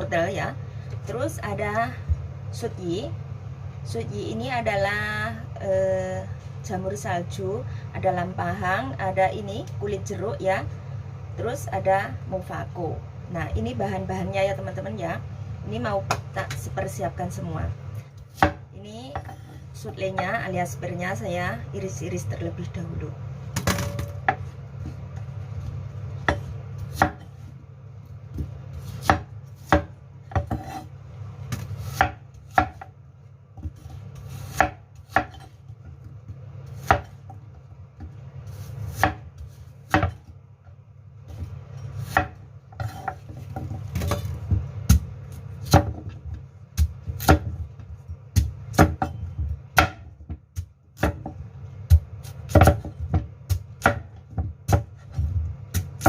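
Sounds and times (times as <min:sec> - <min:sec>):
steady low hum: 0:00.0 - 0:56.0
knife chopping on cutting board: 0:26.2 - 0:27.4, 0:28.3 - 0:30.9, 0:31.5 - 0:32.9, 0:33.6 - 0:37.4, 0:38.0 - 0:40.4, 0:41.3 - 0:56.0.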